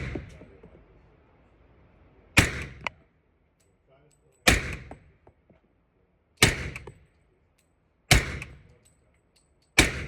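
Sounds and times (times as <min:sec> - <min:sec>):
suppressed pistol shots: 0:02.4 - 0:02.9, 0:04.5 - 0:04.9, 0:08.1 - 0:08.6, 0:09.8 - 0:10.0.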